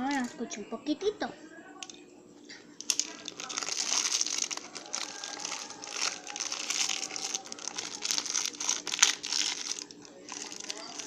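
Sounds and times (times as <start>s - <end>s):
plastic wrapper crinkling: 2.8s - 11.0s.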